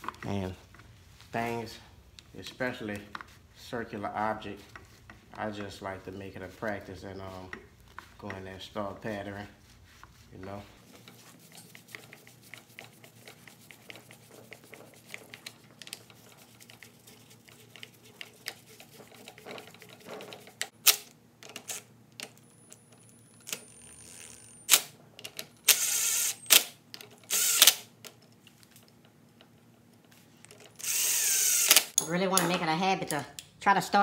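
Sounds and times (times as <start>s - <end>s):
screwdriver clicking on screws: 24.7s - 27.9s, 30.6s - 33.5s
short rasping bursts: 30.8s - 32.0s.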